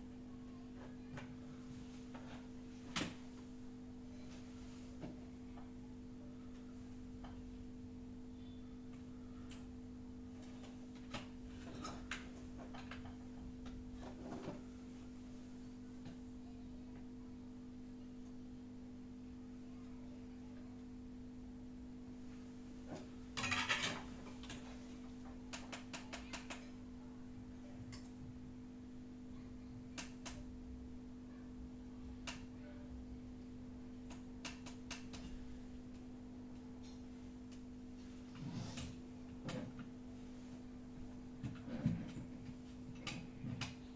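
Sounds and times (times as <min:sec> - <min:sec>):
small tools clicking and clattering: 0:23.4 - 0:24.7.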